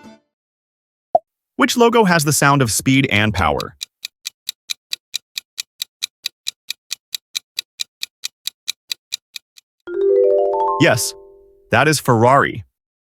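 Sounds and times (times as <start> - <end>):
clock ticking fast: 2.5 - 9.8.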